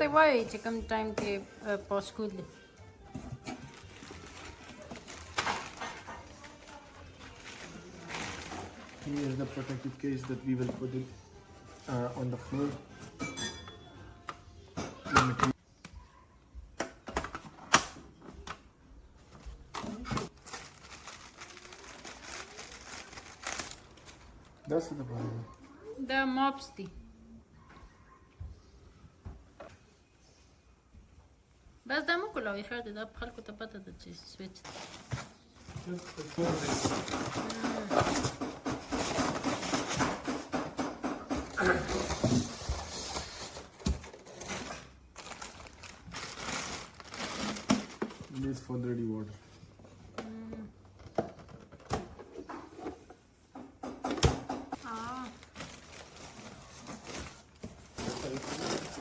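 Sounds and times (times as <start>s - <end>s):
objects handled and set down: 3.0s - 13.5s, 34.6s - 48.6s.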